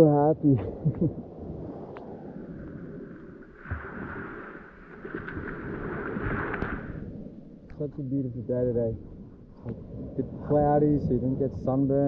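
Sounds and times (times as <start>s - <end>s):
wind buffeting microphone: 0.0s - 12.0s
seawater sloshing and lapping: 3.5s - 7.0s.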